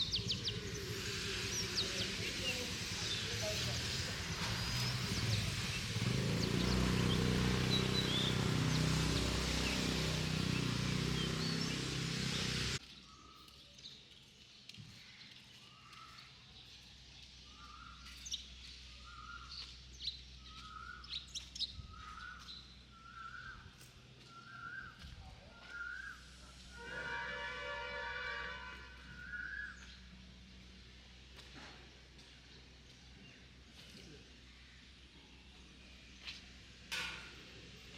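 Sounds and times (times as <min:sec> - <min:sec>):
motor running: 0:00.0 - 0:12.8.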